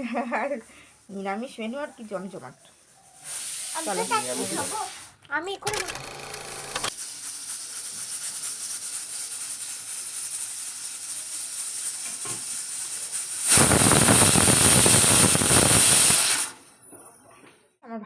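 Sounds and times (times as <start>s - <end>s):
steam hissing: 3.3s - 5.0s, 5.7s - 16.6s.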